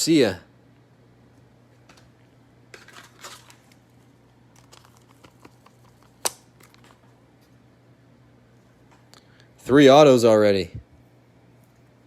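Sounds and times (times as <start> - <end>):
cards being handled ticks: 4.5 - 7.1.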